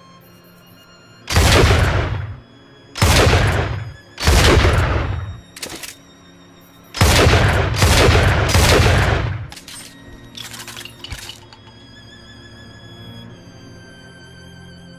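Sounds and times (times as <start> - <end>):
shotgun blasts: 1.3 - 2.4, 3.0 - 5.8, 7.0 - 9.5.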